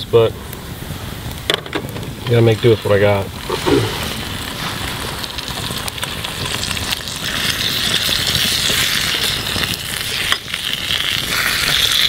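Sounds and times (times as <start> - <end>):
food sizzling in a pan: 2.5 - 12.0.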